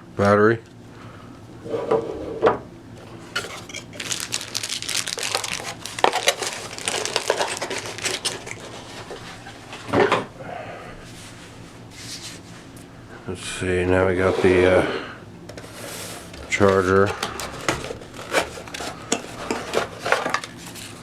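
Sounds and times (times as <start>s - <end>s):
plastic and cardboard crinkling: 3.3s - 9.6s, 15.5s - 21.0s.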